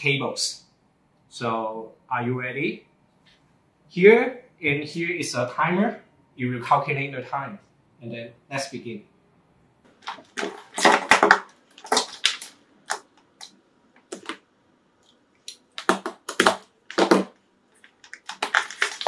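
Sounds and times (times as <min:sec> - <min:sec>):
plastic cables rustling: 0:09.9 - 0:14.4, 0:16.5 - 0:19.0.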